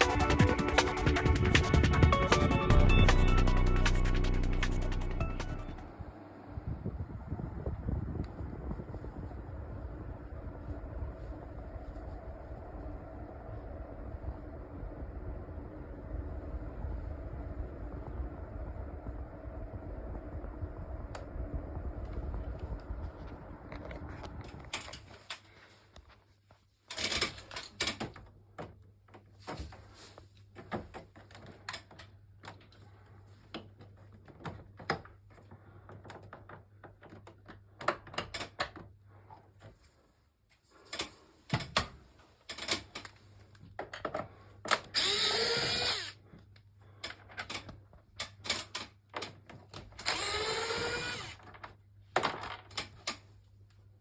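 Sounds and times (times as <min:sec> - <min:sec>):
cordless screwdriver whirring: 0:44.9 - 0:46.2, 0:50.0 - 0:51.4.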